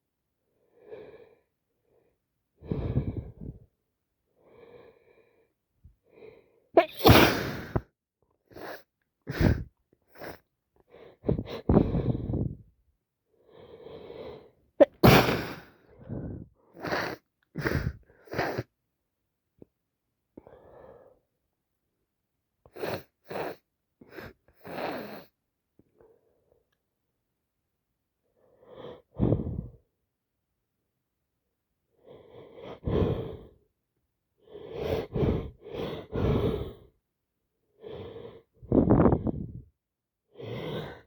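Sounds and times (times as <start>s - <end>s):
person sneezing: 6.8s - 7.8s, 14.8s - 15.7s
person sniffling: 6.8s - 7.8s, 8.5s - 10.4s, 14.8s - 18.7s.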